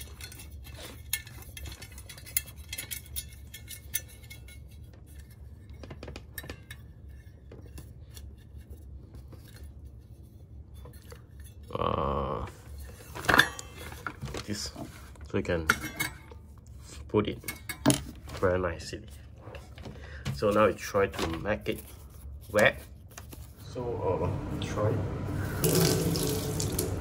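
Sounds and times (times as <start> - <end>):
metal and plastic parts clinking: 0.0 - 5.3.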